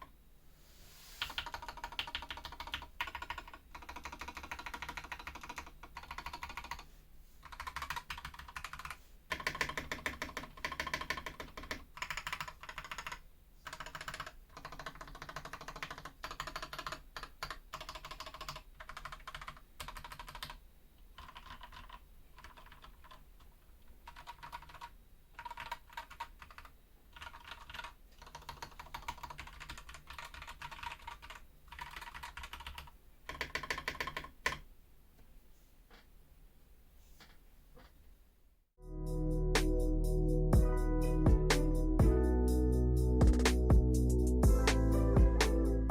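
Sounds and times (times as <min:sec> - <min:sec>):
mechanical keyboard typing: 0:01.2 - 0:06.8, 0:07.4 - 0:34.6.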